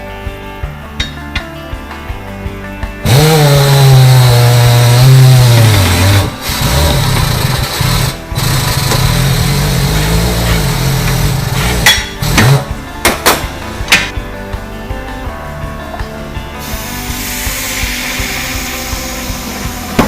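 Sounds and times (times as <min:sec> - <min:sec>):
electric motor humming: 0:03.0 - 0:12.6.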